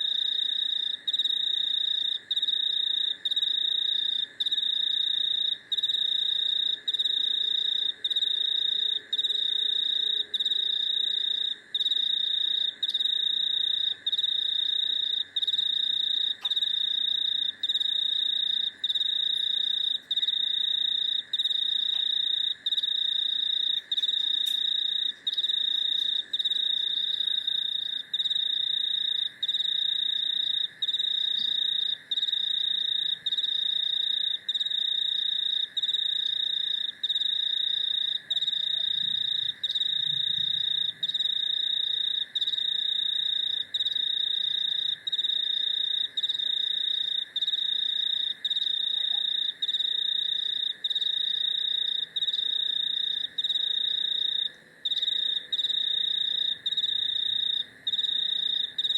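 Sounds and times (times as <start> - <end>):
insect high continuous trill: 0.0 - 58.9
low insect drone: 0.0 - 58.9.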